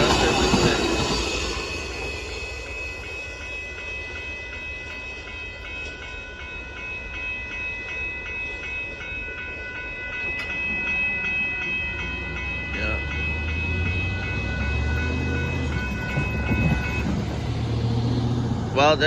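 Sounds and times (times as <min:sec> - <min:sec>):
train wheels rumbling on rail: 0:00.0 - 0:07.4, 0:10.0 - 0:19.0.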